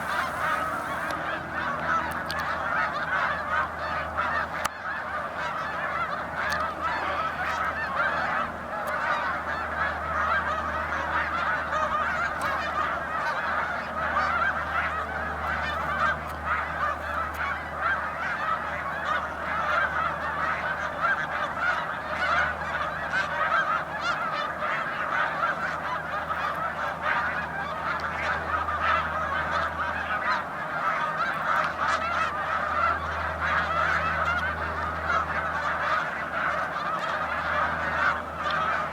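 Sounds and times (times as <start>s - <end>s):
flock of geese honking: 0.0s - 38.9s.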